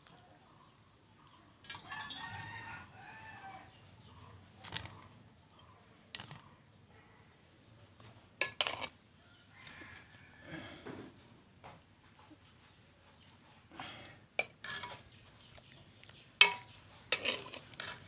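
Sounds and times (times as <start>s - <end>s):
rooster crowing: 1.8s - 3.7s, 9.2s - 10.9s
kitchen utensils clinking: 8.4s - 8.9s, 14.4s - 15.1s, 16.4s - 18.0s.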